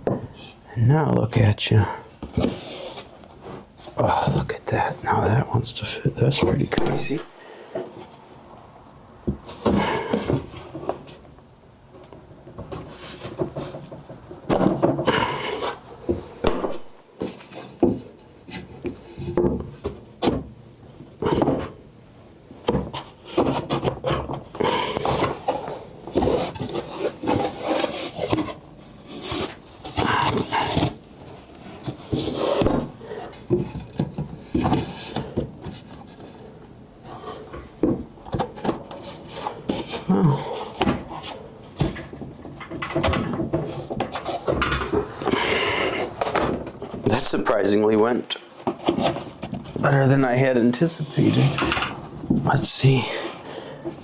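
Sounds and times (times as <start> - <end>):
wood rubbing and scraping on wood: 2.2 - 5.4, 12.0 - 19.9, 22.7 - 47.6.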